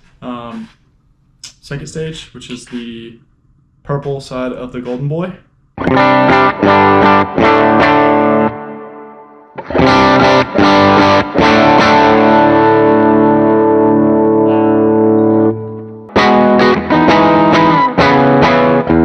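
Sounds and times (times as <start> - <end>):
overdriven electric guitar chords: 5.8 - 19.0.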